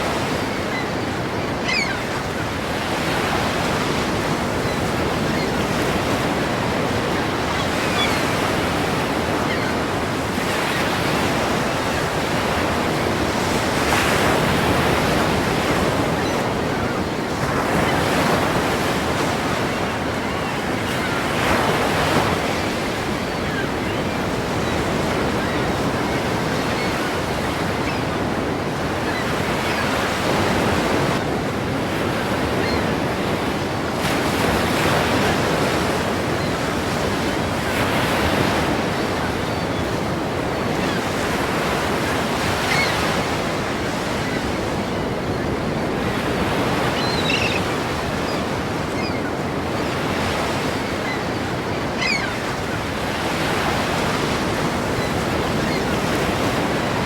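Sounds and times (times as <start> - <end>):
ocean waves breaking: 0.0 - 57.0.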